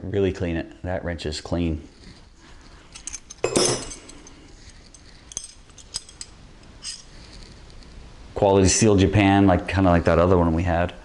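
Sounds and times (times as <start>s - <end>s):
metal wrenches clinking: 2.9s - 7.2s.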